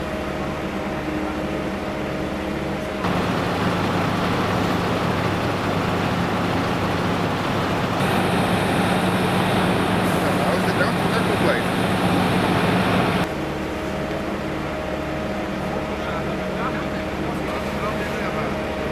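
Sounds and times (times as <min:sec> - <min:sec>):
vehicle engine running: 0:03.0 - 0:13.3.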